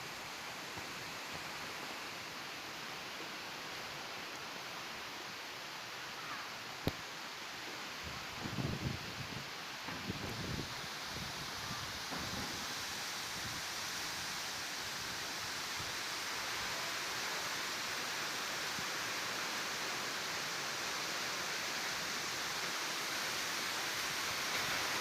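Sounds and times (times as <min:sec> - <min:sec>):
strong wind through trees: 0:00.0 - 0:25.0.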